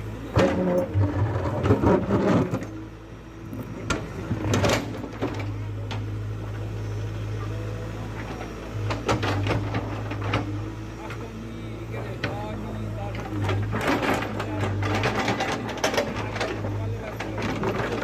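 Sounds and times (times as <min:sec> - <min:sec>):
diesel engine running: 0:00.0 - 0:18.0.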